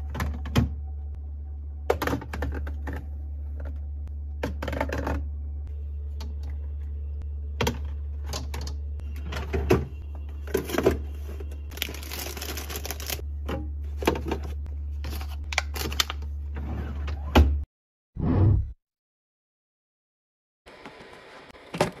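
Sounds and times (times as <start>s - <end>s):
food containers clicking and knocking: 1.9s - 3.8s
plastic packaging crinkling: 11.7s - 13.2s.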